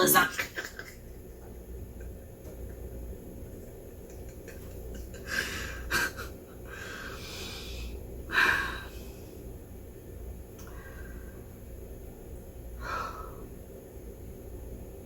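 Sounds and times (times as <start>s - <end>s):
woman laughing with wheezing breaths: 4.0s - 6.9s.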